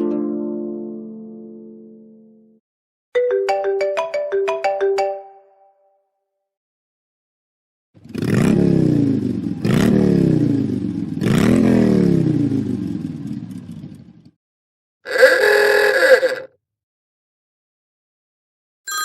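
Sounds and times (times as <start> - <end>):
ringtone: 3.2 - 6.0, 15.1 - 16.5
motorcycle engine revving: 8.0 - 14.4.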